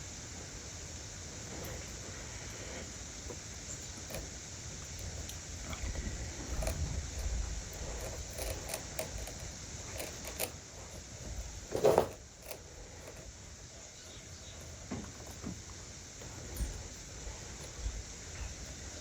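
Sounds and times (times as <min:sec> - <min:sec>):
tools and wood clicking and knocking: 0:03.2 - 0:13.4, 0:14.0 - 0:17.0.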